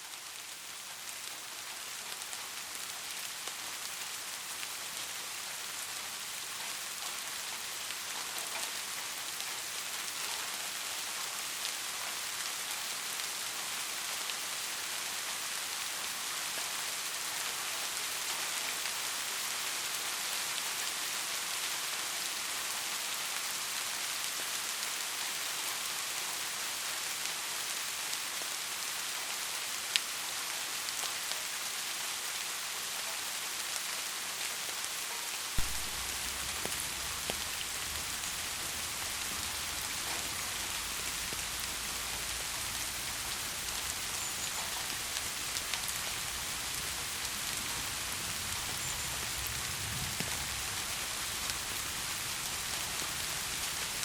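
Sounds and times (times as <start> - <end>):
steady rain falling: 0.0 - 54.0
raindrop hits: 35.6 - 42.0.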